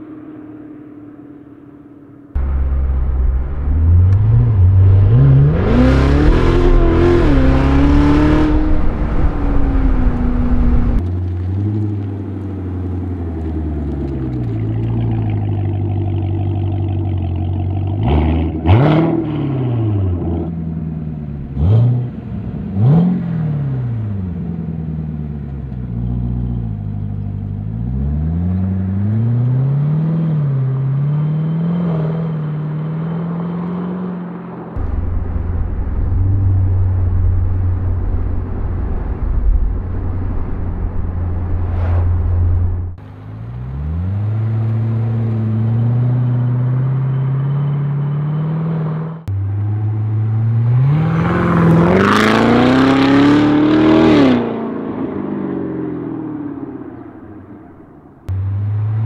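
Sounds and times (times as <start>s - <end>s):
engine throttle blips: 1.5s - 23.0s, 34.8s - 48.6s, 49.2s - 53.3s, 54.0s - 59.0s
sports car engine revving: 2.4s - 12.0s, 13.1s - 34.0s, 41.2s - 59.0s.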